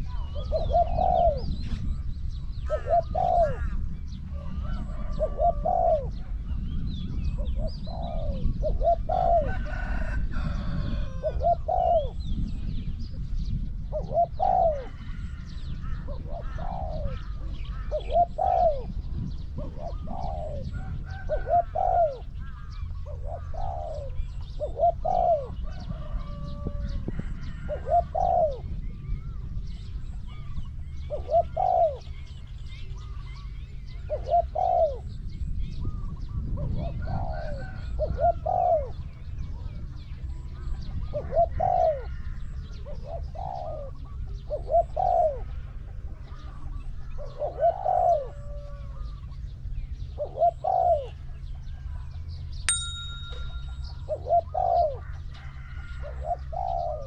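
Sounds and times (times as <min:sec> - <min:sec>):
steady low rumble: 0:00.0 - 0:09.5, 0:15.2 - 0:25.9
doves cooing: 0:00.0 - 0:12.8, 0:13.4 - 0:57.0.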